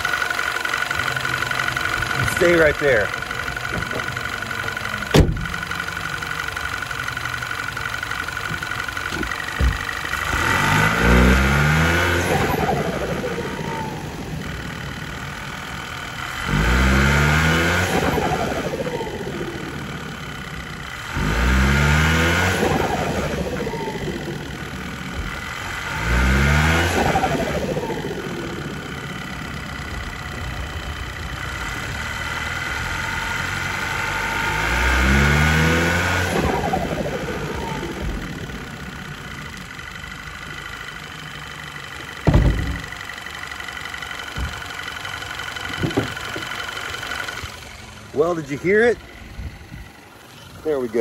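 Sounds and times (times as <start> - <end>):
turbo compressor surging: 0.0 - 51.0
turbocharged engine revving: 0.0 - 51.0
sharp thump: 5.1 - 5.5, 42.2 - 43.0.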